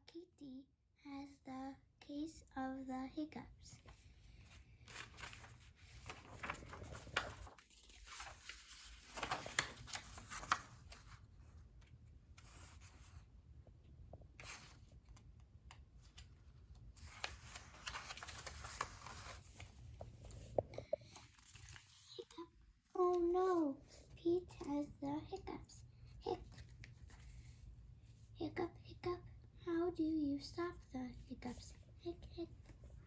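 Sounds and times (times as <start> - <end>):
paper pages rustling: 3.8 - 13.3, 14.3 - 22.4, 26.3 - 27.7.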